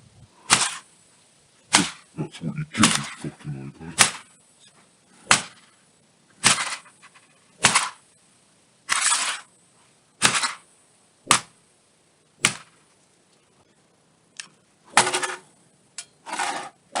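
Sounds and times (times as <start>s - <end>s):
sledgehammer cracking a tablet: 0.5s - 0.8s, 1.7s - 2.1s, 4.0s - 4.3s, 5.3s - 5.7s, 6.4s - 6.9s, 7.6s - 8.0s, 10.2s - 10.6s, 11.3s - 11.6s, 12.4s - 12.8s.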